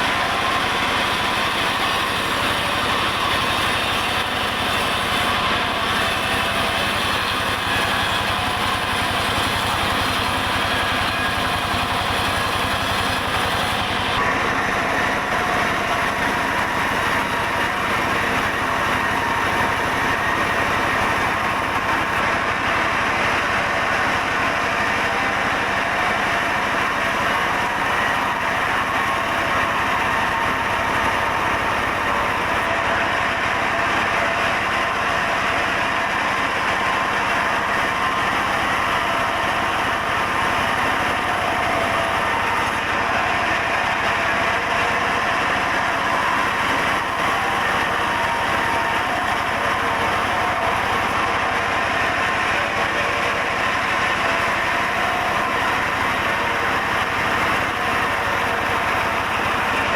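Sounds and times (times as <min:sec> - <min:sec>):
sawmill saw and engine running: 0:00.0 - 0:59.9.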